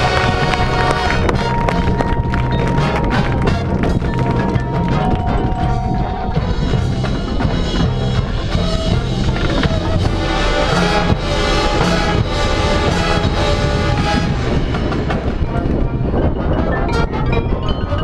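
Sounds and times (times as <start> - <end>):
brass horns playing chords: 0.0 - 15.8
marching drums: 0.0 - 16.0.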